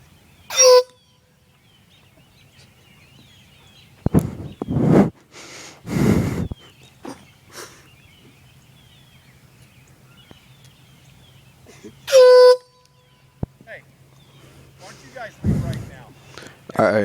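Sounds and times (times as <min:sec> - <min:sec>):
birds chirping faintly: 0:00.0 - 0:17.0
air horn blast: 0:00.5 - 0:01.0, 0:12.1 - 0:12.8
sharp breathy bursts: 0:04.3 - 0:06.6.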